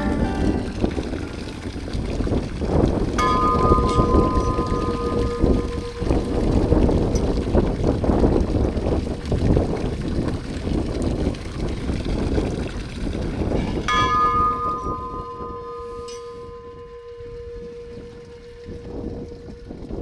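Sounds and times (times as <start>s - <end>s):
bell ringing: 0.0s - 1.6s, 3.2s - 6.8s, 13.9s - 18.7s.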